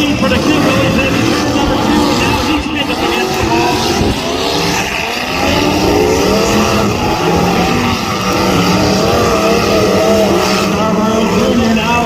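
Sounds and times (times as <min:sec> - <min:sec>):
car engines revving: 0:00.0 - 0:12.0.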